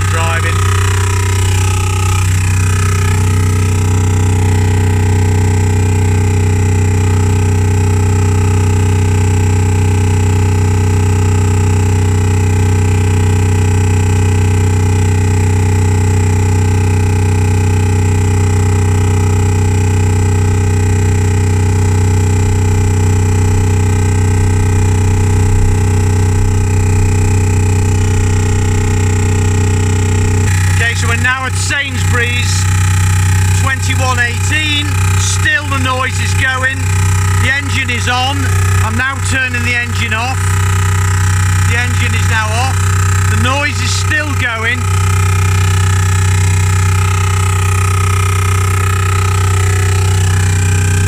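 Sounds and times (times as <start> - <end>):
loud low electronic drone: 0.0 - 51.0.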